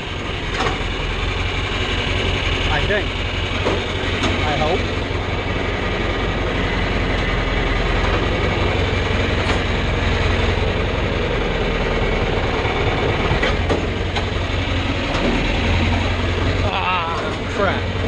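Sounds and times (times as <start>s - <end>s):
tractor engine running: 0.0s - 18.0s
knocks of a wagon rig: 0.3s - 1.1s, 2.1s - 5.0s, 7.0s - 10.5s, 13.2s - 14.4s.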